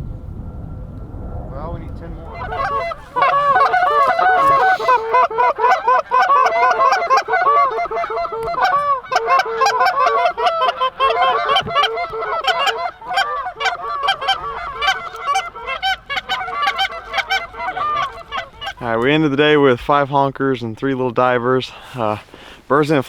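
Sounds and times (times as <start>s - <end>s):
geese honking: 2.1s - 19.8s.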